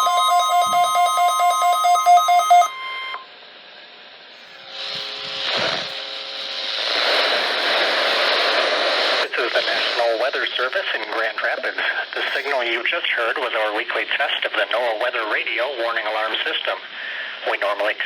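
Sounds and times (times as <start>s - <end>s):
steady alarm tone: 0.0s - 3.3s
radio static hiss: 4.7s - 18.0s.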